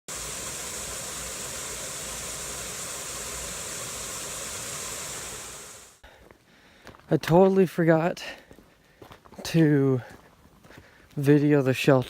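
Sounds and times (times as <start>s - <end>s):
steady hiss of noise: 0.1s - 6.0s.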